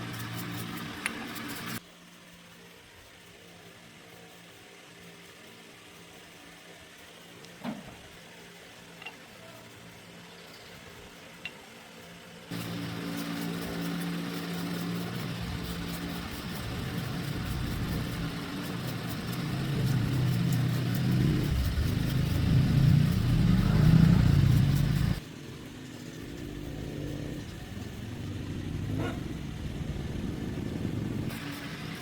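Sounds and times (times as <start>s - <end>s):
motorbike engine revving: 12.5s - 32.0s.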